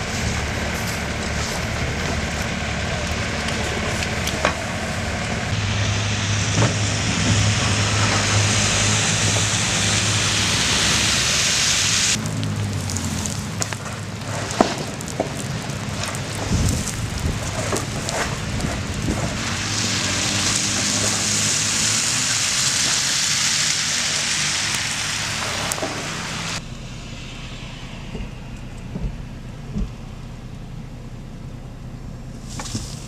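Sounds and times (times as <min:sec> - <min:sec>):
low rumble: 0:00.0 - 0:22.6, 0:24.0 - 0:33.0
engine hum: 0:00.0 - 0:33.0
tyres hissing on slush: 0:05.4 - 0:14.7, 0:17.6 - 0:28.1.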